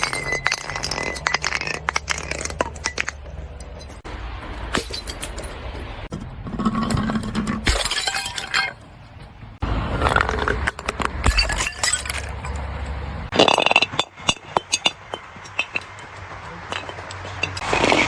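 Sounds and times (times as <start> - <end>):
glass shards tinkling: 0.0 - 4.0, 4.6 - 5.9, 11.2 - 12.7
glass bottles breaking: 0.0 - 6.0, 6.7 - 8.8, 10.0 - 12.7, 13.3 - 18.0.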